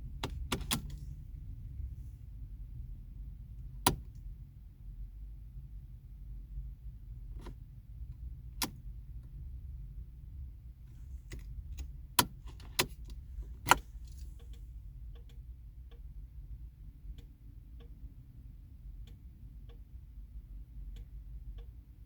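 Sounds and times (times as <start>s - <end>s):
faint irregular ticks: 14.0s - 16.1s.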